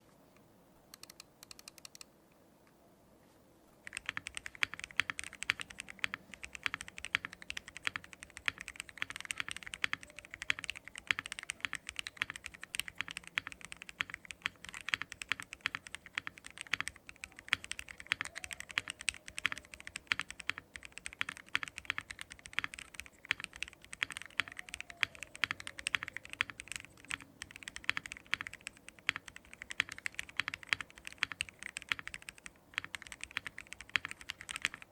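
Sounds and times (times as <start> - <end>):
mechanical keyboard typing: 3.8 - 34.9.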